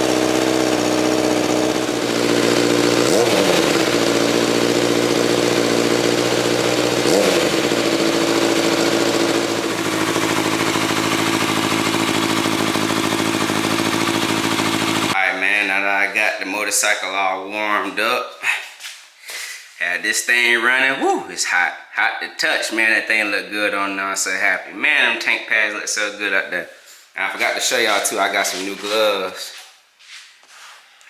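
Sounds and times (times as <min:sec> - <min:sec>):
motorcycle engine idling: 0:00.0 - 0:15.2
motorcycle throttle blips: 0:00.0 - 0:15.2.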